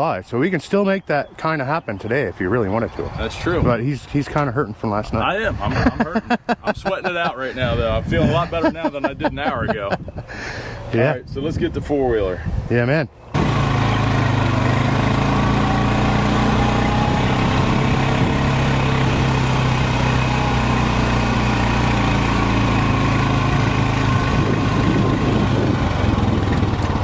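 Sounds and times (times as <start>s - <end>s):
four-wheeler engine running: 13.3s - 27.0s.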